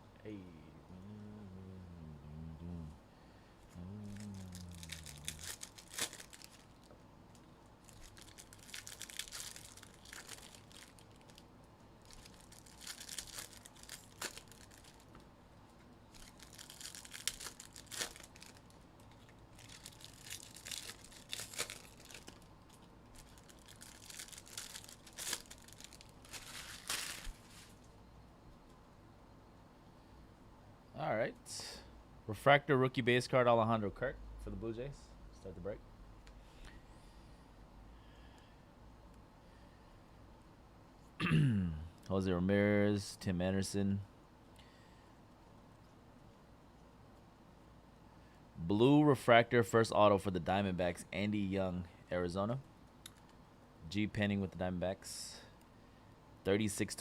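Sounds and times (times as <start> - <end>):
wrappers torn and crinkled: 4.1 - 6.9, 7.8 - 15.2, 16.1 - 27.8.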